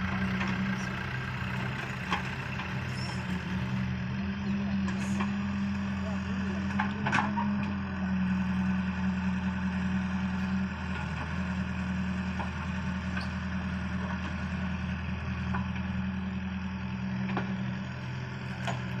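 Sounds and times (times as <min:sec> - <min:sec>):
excavator diesel engine running: 0:00.0 - 0:19.0.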